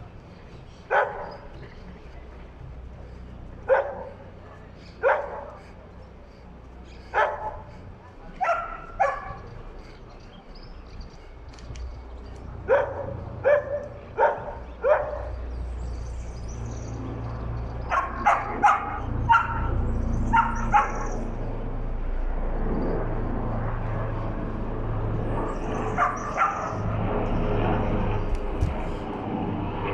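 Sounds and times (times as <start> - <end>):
steady low hum: 0.0 - 29.9
dog barking: 0.9 - 1.4, 3.7 - 5.6, 7.1 - 7.7, 8.4 - 9.4, 12.7 - 15.4, 17.8 - 19.7, 20.3 - 21.2, 26.0 - 26.8.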